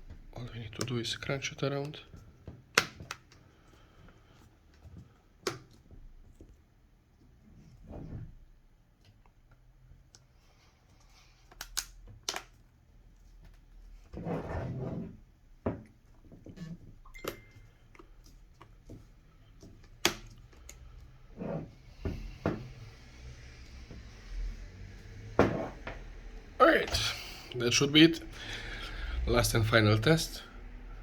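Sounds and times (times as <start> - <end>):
plastic clicks and snaps: 11.5 - 12.6.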